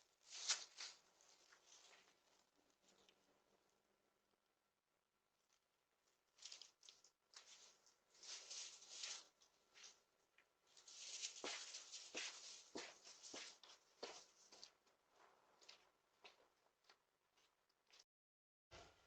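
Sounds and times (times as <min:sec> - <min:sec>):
faint rustling and scuffing: 0:00.2 - 0:03.1, 0:06.4 - 0:10.0, 0:10.7 - 0:18.0.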